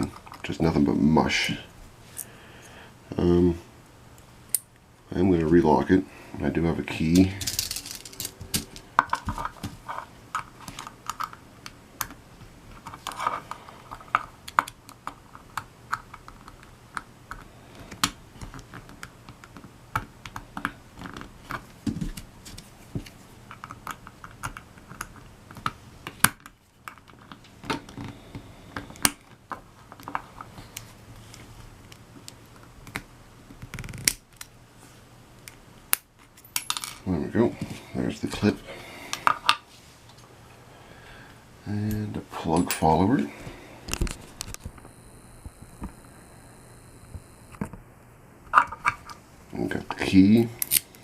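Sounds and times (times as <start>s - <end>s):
small metallic clicks on padlock: 50.6s - 50.9s.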